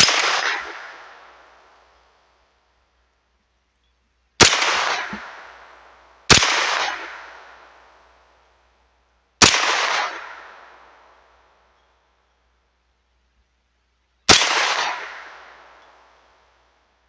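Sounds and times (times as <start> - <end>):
gunshots with echo: 0.0 - 1.5, 4.4 - 7.7, 14.3 - 15.8.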